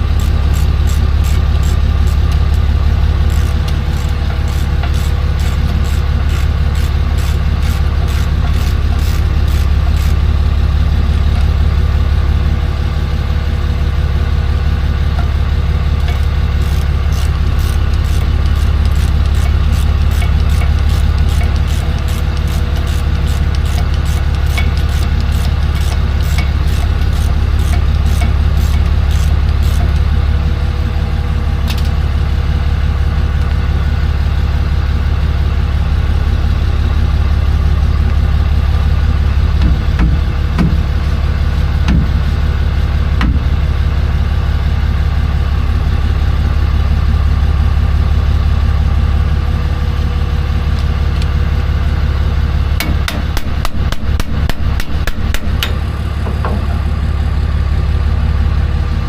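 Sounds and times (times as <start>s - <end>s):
truck engine idling: 0.0s - 59.0s
run of clicks: 16.0s - 30.1s
metallic knocks: 52.8s - 57.0s.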